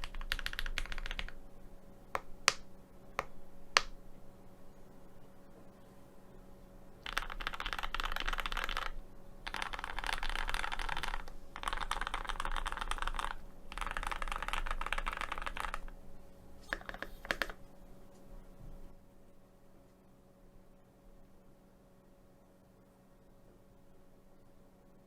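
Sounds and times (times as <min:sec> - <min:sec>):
mechanical keyboard typing: 0:00.0 - 0:01.4, 0:07.0 - 0:16.0, 0:16.7 - 0:17.6.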